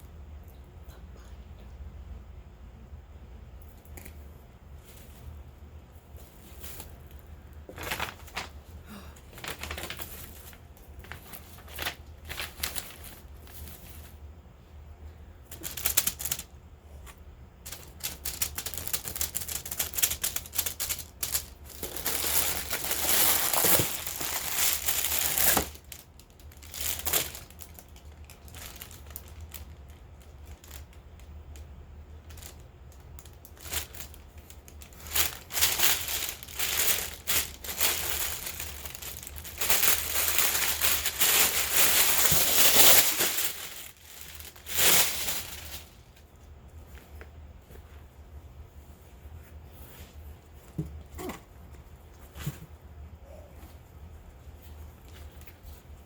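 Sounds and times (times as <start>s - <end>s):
steady low hum: 0.0s - 56.0s
wrapping crinkling: 6.1s - 14.3s, 15.5s - 46.3s.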